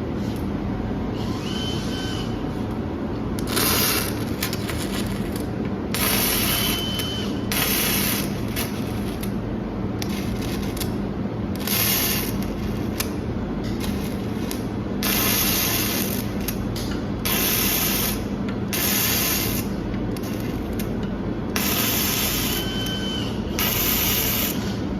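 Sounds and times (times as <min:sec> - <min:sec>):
steady low hum: 0:00.0 - 0:24.9
welding arc hissing and crackling: 0:03.4 - 0:09.3, 0:10.0 - 0:11.0, 0:11.6 - 0:13.2, 0:13.8 - 0:20.9, 0:21.6 - 0:24.8.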